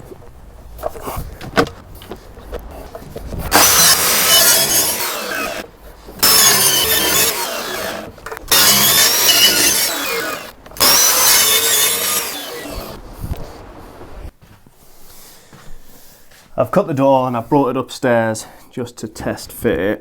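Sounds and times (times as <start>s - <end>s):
power saw cutting wood: 3.5s - 13.0s.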